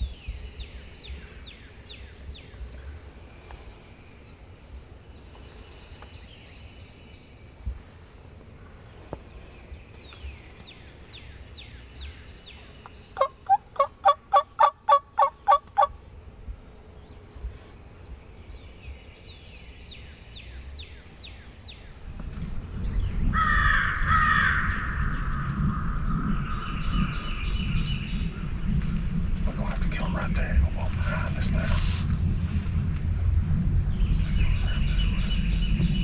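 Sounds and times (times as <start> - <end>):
quiet woodland background: 0.0 - 36.0
turkey calling: 13.2 - 16.0.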